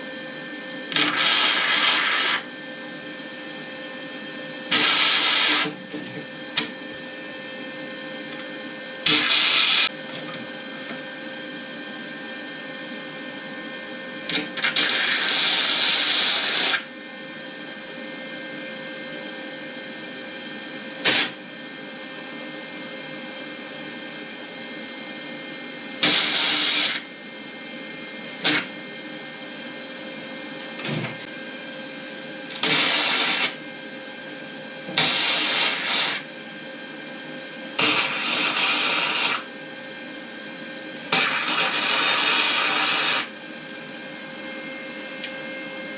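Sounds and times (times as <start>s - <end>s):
power tool on sheet metal: 0.0s - 11.0s, 14.2s - 17.0s, 21.0s - 21.5s, 26.0s - 27.1s, 28.2s - 29.2s, 30.5s - 31.4s, 32.2s - 39.9s, 40.9s - 44.4s
steady machine hum: 41.0s - 45.9s.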